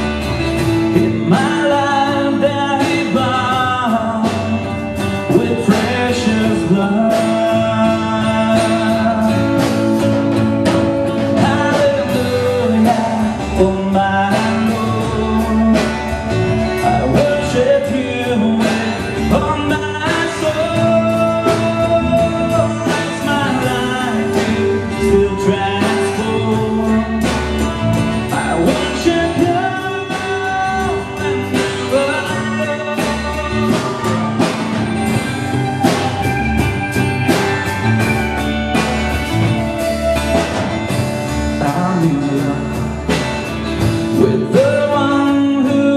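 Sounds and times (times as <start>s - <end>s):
bass guitar: 0.0s - 45.9s
drum kit: 0.0s - 45.9s
electric guitar: 0.0s - 45.9s
person singing: 0.0s - 45.9s.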